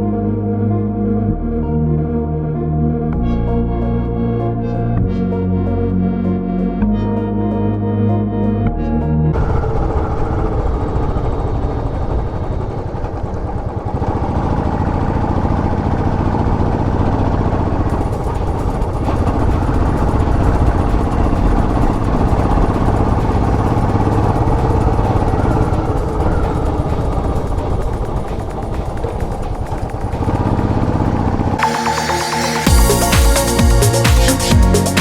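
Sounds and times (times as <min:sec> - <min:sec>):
motorcycle engine running: 0:09.4 - 0:31.7.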